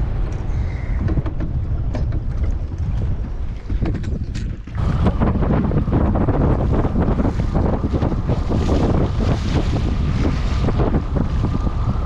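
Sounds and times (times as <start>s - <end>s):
wind buffeting microphone: 0.0s - 12.0s
light clicks and knocks: 0.1s - 4.8s.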